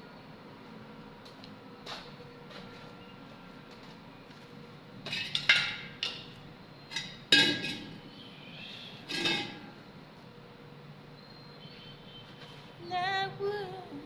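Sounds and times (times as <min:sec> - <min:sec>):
metal clanking on metal: 0:05.1 - 0:08.0, 0:09.1 - 0:09.8.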